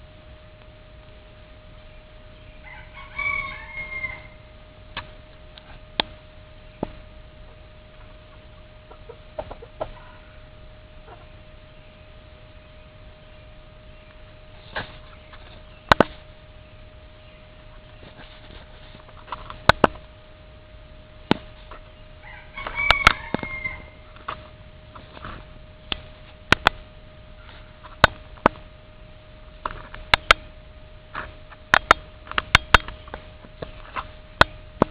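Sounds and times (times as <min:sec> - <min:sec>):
faint steady tone: 0:00.0 - 0:34.9
rooster crowing: 0:02.6 - 0:04.5, 0:22.2 - 0:24.1.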